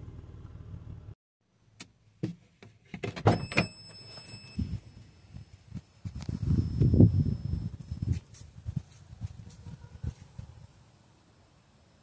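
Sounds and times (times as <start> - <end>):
car engine idling: 0.0 - 1.2.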